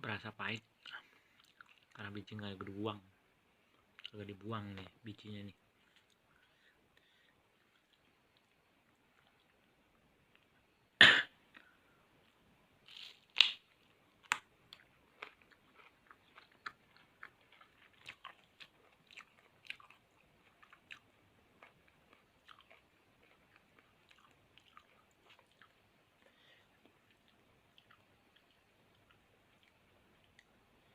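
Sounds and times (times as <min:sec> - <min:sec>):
chewing crunchy fruit: 0:00.8 - 0:02.7, 0:12.9 - 0:30.5.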